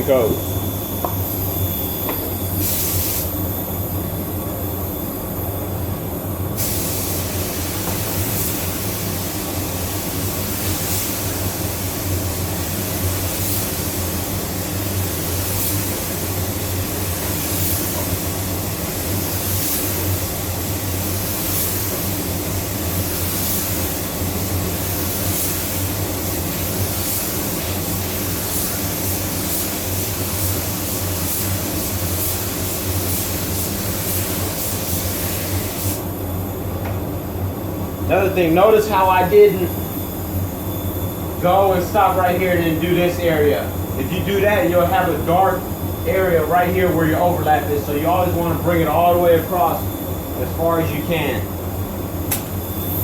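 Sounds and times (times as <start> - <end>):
steady low hum: 0.0 - 53.0
paint spray gun hissing: 2.6 - 3.3, 6.6 - 36.1.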